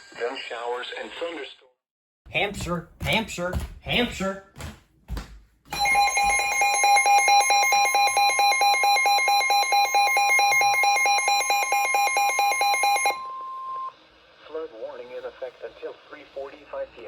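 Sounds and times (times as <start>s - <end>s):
steady warning alarm tone: 5.7s - 13.9s
rapid pulsing alarm beep: 5.8s - 13.9s.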